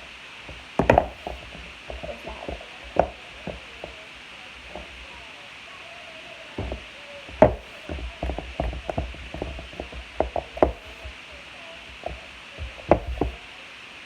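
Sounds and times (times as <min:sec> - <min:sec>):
plastic cups and utensils tapping: 0:00.5 - 0:05.1, 0:06.6 - 0:11.2, 0:11.9 - 0:13.4.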